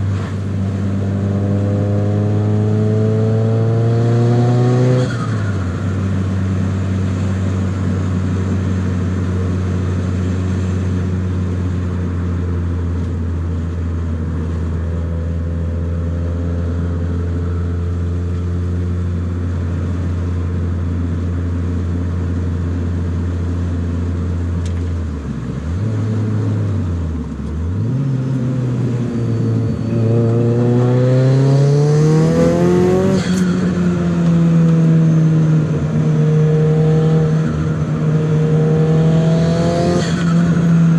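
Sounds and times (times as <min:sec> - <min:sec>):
car engine revving: 0:00.0 - 0:12.3, 0:22.7 - 0:40.9.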